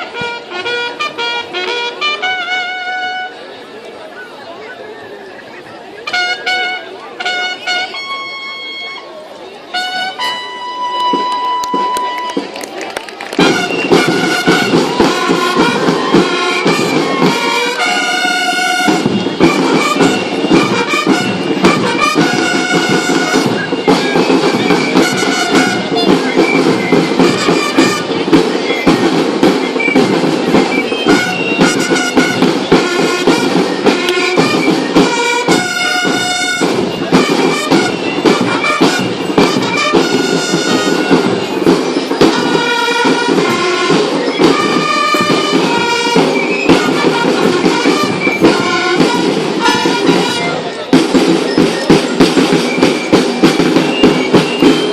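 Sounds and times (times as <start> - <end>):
music with steady beat: 13.4 - 54.9.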